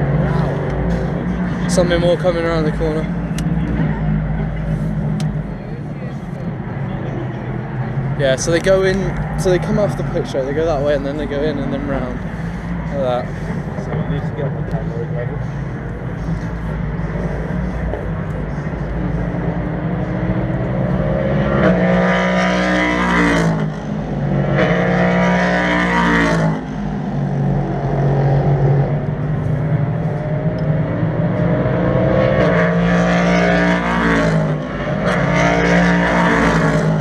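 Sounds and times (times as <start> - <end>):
other race cars on track: 0.0 - 37.0
race car accelerating and upshifting: 0.0 - 37.0.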